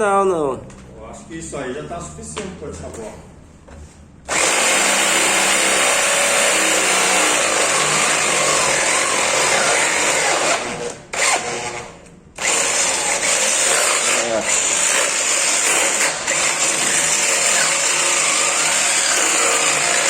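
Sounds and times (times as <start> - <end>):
electric drill boring into metal: 4.3 - 20.0.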